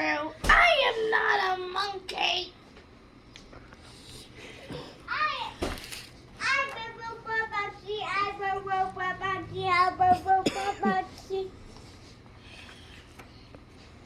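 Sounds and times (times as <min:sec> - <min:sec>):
child singing wordless syllables: 0:06.4 - 0:11.6.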